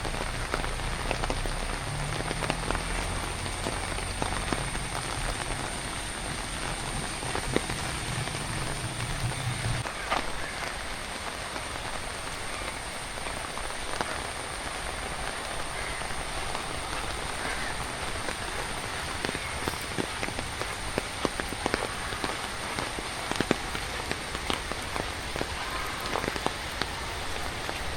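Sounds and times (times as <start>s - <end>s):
drips and patters: 0.0s - 27.9s
steady rain falling: 0.0s - 27.9s
low rumble: 1.5s - 9.8s.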